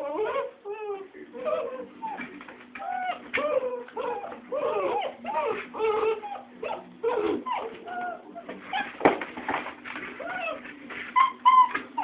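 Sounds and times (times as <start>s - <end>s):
puppies whimpering and yelping: 0.0s - 9.0s, 10.2s - 12.0s.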